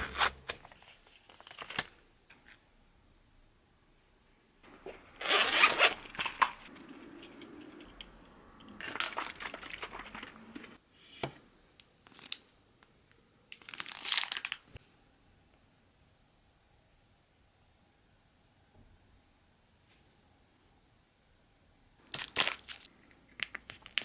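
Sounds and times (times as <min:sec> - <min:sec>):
packaging crinkling and rustling: 0:00.0 - 0:02.0, 0:08.8 - 0:10.7, 0:13.5 - 0:14.8, 0:22.1 - 0:24.0.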